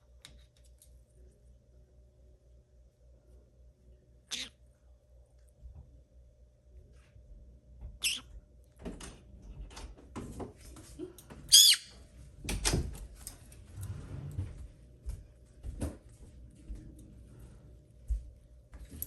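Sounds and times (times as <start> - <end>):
parrot squawking: 4.3 - 4.6, 8.0 - 8.3, 11.5 - 11.9.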